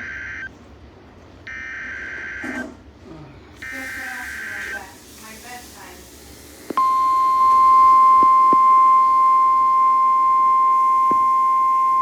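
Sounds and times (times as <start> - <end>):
loud steady alarm tone: 1.5 - 2.7, 3.6 - 5.0, 6.8 - 12.0.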